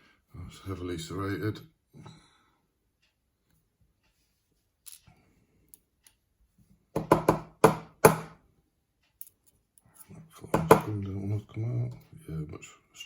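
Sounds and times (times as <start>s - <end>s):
sharp metallic knocks: 7.0s - 8.4s.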